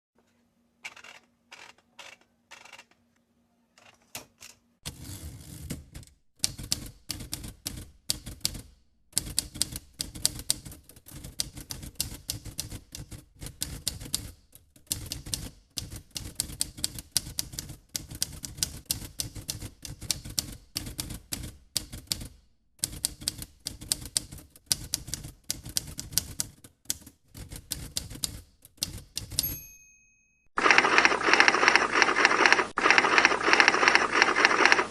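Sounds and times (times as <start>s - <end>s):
typewriter keys clattering: 6.4s - 29.6s, 30.6s - 34.9s
typewriter bell ringing: 29.3s - 34.9s.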